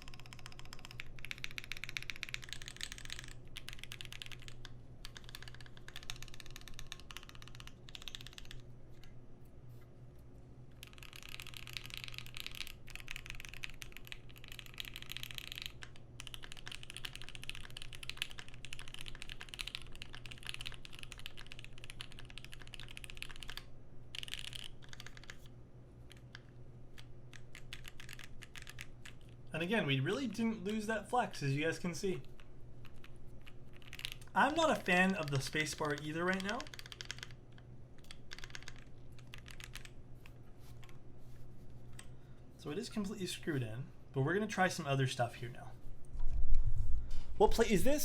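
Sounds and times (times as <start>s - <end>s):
mechanical keyboard typing: 0.0s - 9.2s, 10.8s - 25.5s, 26.1s - 29.3s, 30.3s - 41.0s
steady low hum: 0.0s - 48.0s.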